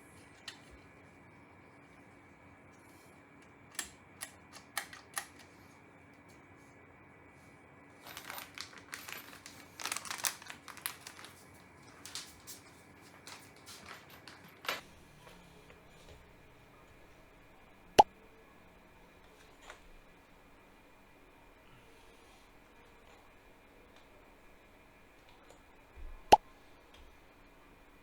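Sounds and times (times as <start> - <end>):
faint steady hum: 0.0 - 28.0
small parts clicking and tapping: 3.4 - 5.6.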